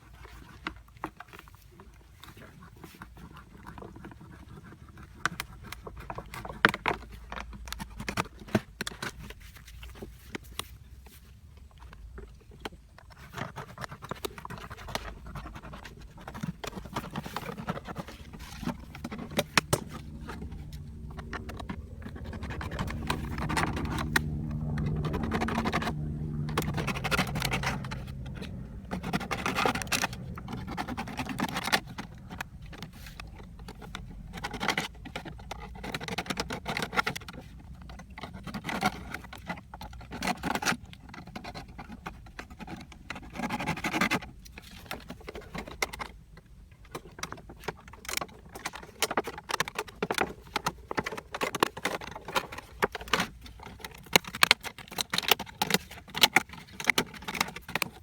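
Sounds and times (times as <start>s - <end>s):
close scratching and clicking: 0.0s - 58.0s
low hum: 14.4s - 39.5s.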